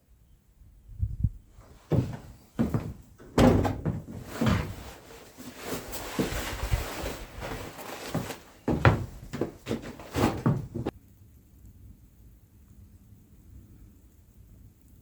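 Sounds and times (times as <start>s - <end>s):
rustling: 1.6s - 10.9s
knocks and thumps: 1.9s - 10.9s.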